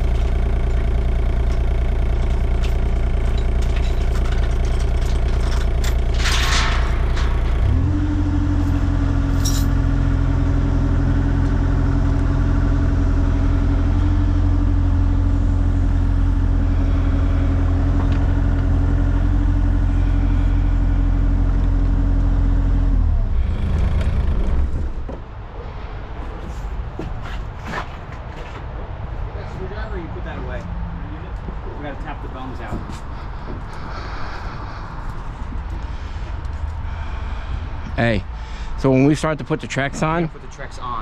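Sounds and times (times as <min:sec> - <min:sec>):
excavator diesel engine revving: 0:00.0 - 0:25.1.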